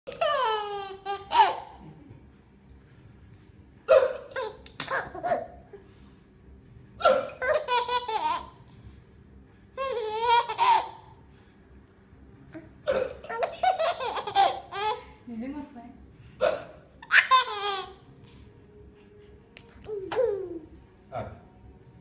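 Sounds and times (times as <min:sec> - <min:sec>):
man hiccuping: 0:16.4 - 0:16.8.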